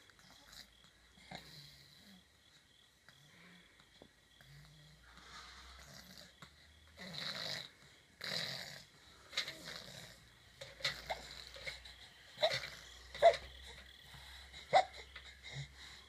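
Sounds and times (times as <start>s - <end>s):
snuffling snorts: 4.4s - 16.0s
person snoring: 7.0s - 13.2s.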